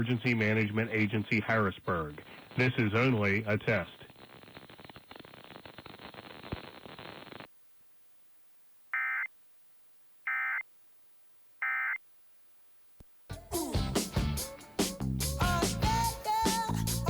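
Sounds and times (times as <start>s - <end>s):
crackly hiss: 0.0s - 7.6s.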